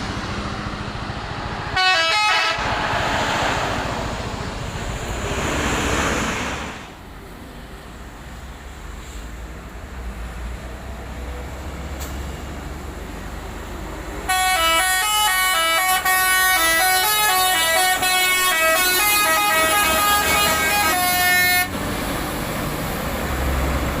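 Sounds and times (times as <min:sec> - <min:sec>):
bus horn playing a tune: 0:01.7 - 0:02.6, 0:14.2 - 0:21.8
low rumble: 0:02.5 - 0:06.9.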